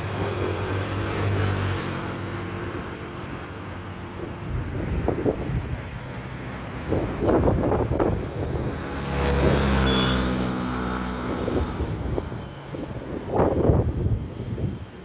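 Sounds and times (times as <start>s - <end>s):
wind buffeting microphone: 4.0s - 15.0s
vehicle passing by: 5.9s - 14.0s.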